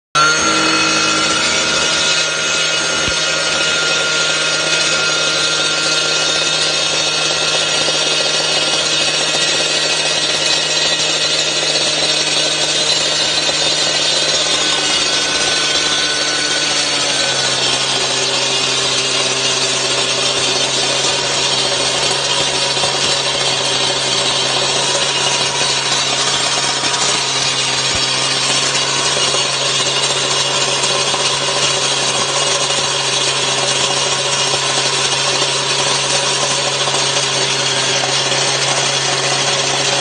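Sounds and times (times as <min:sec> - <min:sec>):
grinder cutting into wall: 0:00.2 - 0:40.0.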